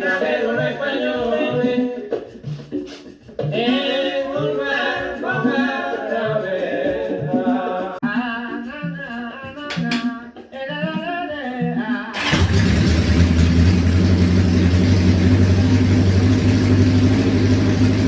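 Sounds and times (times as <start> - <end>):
person singing: 0.0 - 2.2, 3.6 - 12.2.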